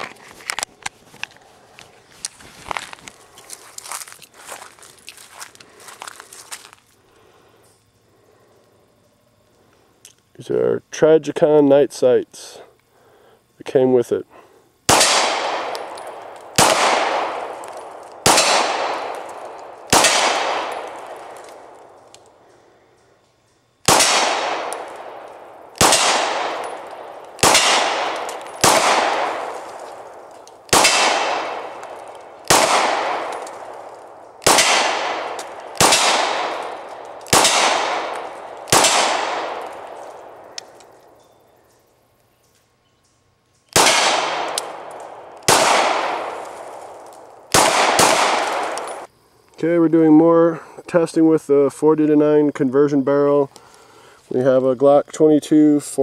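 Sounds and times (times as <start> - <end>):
pistol gunshots: 14.9 - 22.1, 23.8 - 41.0, 43.7 - 49.1.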